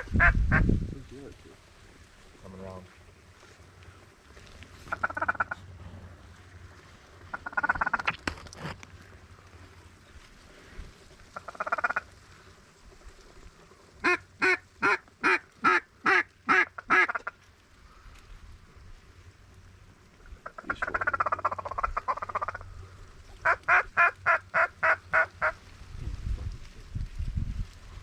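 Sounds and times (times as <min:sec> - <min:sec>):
duck call quacks: 0:00.0 - 0:00.7, 0:04.9 - 0:05.6, 0:07.3 - 0:08.1, 0:11.4 - 0:12.0, 0:14.0 - 0:17.3, 0:20.4 - 0:22.6, 0:23.4 - 0:25.6.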